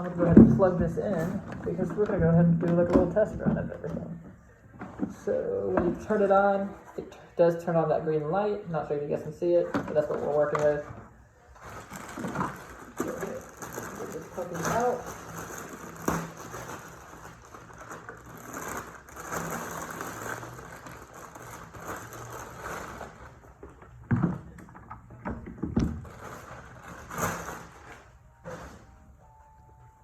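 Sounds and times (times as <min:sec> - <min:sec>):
packaging rustling and scraping: 0:00.0 - 0:03.4, 0:09.9 - 0:24.0, 0:25.8 - 0:29.1.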